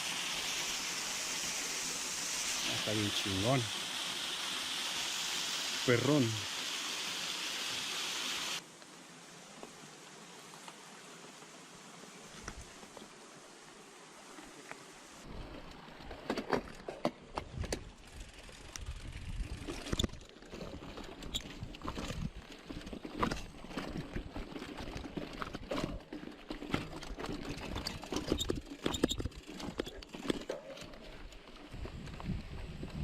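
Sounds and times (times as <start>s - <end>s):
bike rolling over rocky trail: 15.2s - 33.0s
wheels knocking and rattling: 15.3s - 33.0s.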